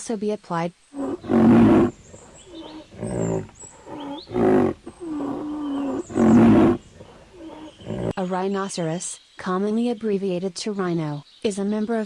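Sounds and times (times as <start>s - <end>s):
loud pitched animal calls: 1.0s - 8.1s.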